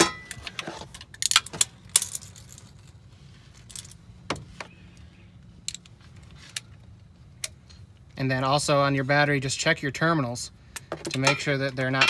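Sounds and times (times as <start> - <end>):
hand tools clinking and rattling: 0.0 - 4.1, 10.8 - 12.0.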